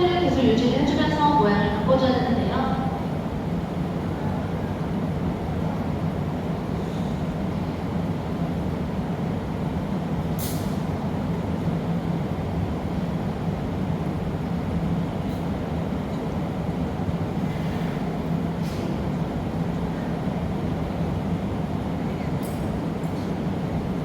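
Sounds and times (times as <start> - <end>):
gas furnace roar: 7.5 - 24.0.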